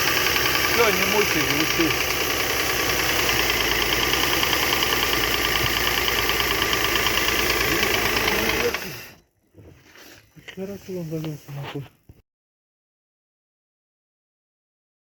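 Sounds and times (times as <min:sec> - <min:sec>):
car engine knocking: 0:00.0 - 0:09.1.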